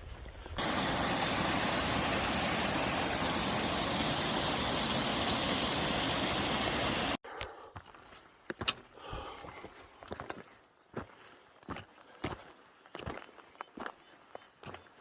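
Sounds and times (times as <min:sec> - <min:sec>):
stream water rushing: 0:00.6 - 0:07.2.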